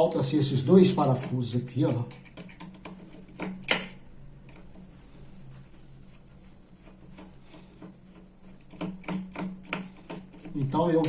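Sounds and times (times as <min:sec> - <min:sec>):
screwdriver scraping screws: 0:00.8 - 0:04.0, 0:07.1 - 0:11.0.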